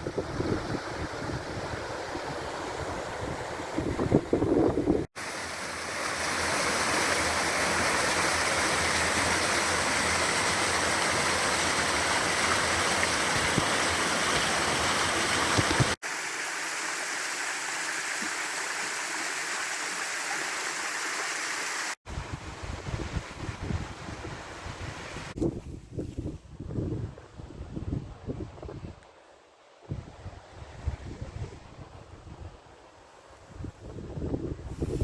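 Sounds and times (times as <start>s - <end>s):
stream rushing: 0.0s - 22.0s.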